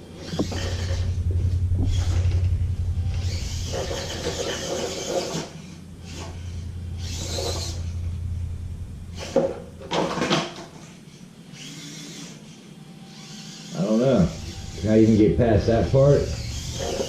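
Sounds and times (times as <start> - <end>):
electric motor whirring: 0.0 - 17.0.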